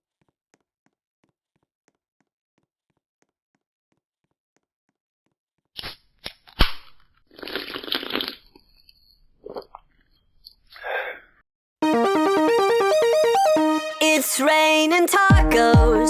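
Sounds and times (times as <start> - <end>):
crunchy chewing: 7.3 - 8.8.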